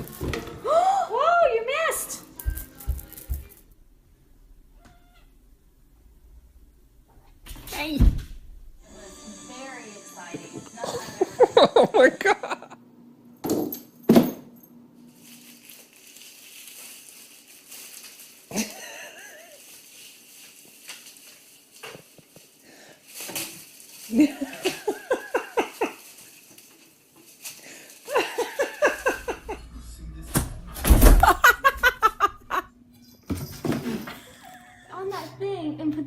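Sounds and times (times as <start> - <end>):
people laughing: 10.8 - 12.8, 24.2 - 26.0, 28.1 - 29.8, 31.1 - 32.7, 34.1 - 35.4.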